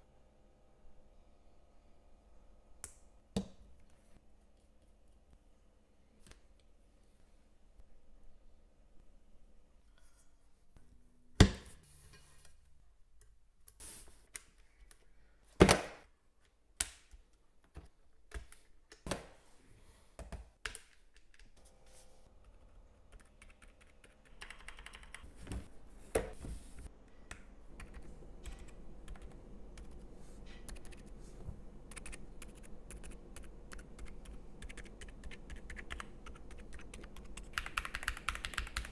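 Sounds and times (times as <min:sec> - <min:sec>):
fast muted keyboard typing: 0:22.5 - 0:25.3, 0:27.7 - 0:38.9.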